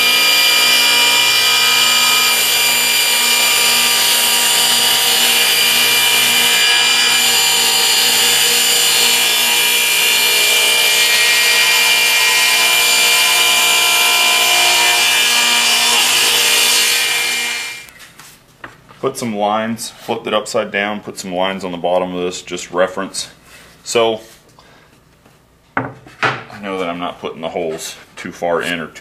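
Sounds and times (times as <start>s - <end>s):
table saw cutting wood: 0.0s - 17.9s.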